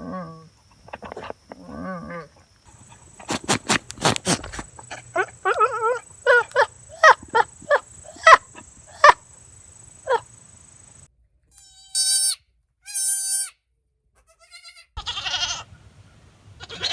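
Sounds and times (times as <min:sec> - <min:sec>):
goats bleating: 0:02.7 - 0:09.2, 0:14.3 - 0:15.7, 0:16.6 - 0:16.9.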